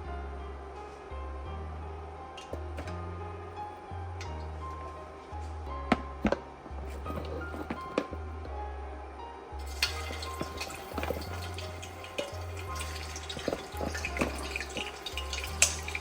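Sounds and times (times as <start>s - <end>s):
background music with bass: 0.0s - 16.0s
tap water splashing in sink: 9.7s - 16.0s.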